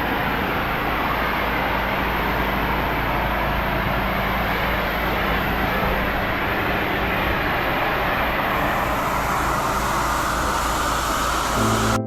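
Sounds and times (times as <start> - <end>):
pressure washer drone: 8.1 - 12.0
high-pressure water spray hissing: 8.4 - 12.0.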